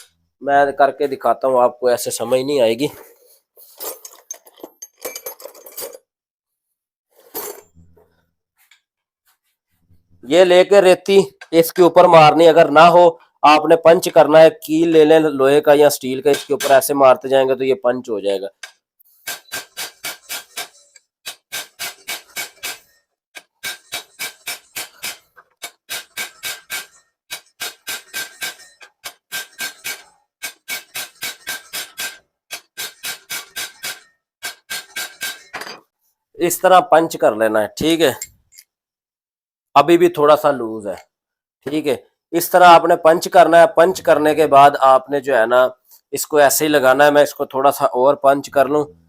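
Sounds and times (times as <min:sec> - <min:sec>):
metal tools clinking: 0:03.0 - 0:06.1, 0:07.2 - 0:08.0, 0:23.6 - 0:35.9, 0:38.1 - 0:38.7.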